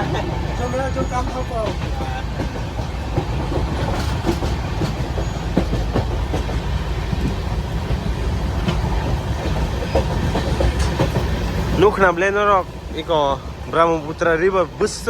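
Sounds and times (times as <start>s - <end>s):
train rumbling: 0.0s - 15.0s
wheels clacking on rails: 0.0s - 15.0s.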